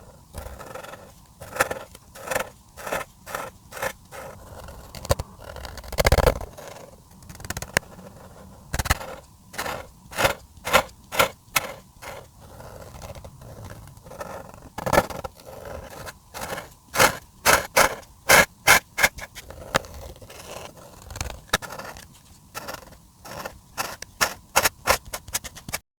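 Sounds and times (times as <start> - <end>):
marker scratching on paper: 20.3 - 25.8.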